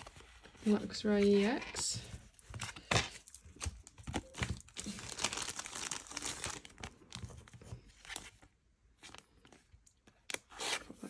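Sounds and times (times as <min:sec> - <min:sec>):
plastic packaging crinkling: 0:02.4 - 0:08.3.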